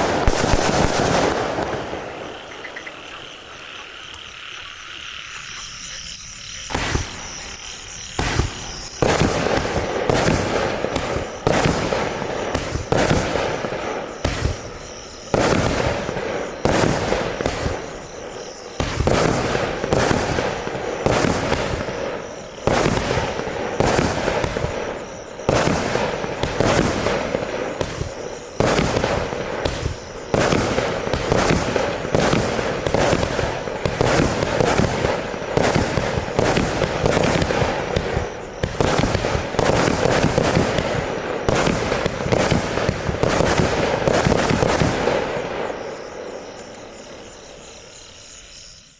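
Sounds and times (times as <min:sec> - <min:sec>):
firework battery firing: 0:00.0 - 0:03.0, 0:18.8 - 0:45.6
crackle of firework bursts: 0:00.0 - 0:04.3, 0:06.7 - 0:47.4.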